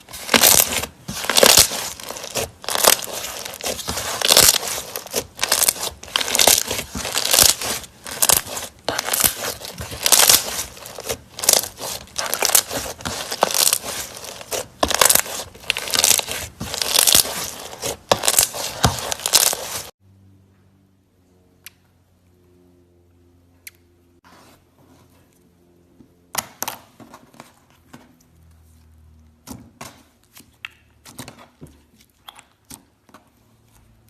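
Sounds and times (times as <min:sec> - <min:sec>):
slime squishing: 0:00.0 - 0:19.9.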